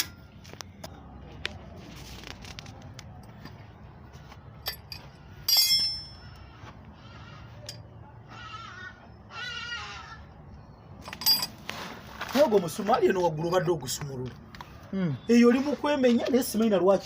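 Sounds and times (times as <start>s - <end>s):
metallic clink with ringing: 4.6s - 6.2s, 11.0s - 11.6s.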